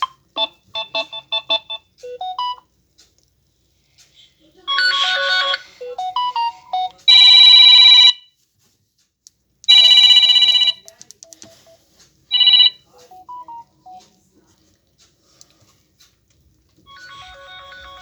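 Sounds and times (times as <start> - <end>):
phone ringtone fluttering rings: 9.7 - 10.8, 12.3 - 12.7.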